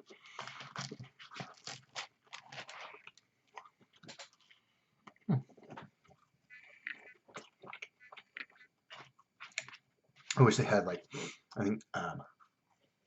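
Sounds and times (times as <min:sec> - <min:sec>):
person chewing and crunching food: 0:00.0 - 0:11.6
wet mouth noises: 0:00.1 - 0:10.4.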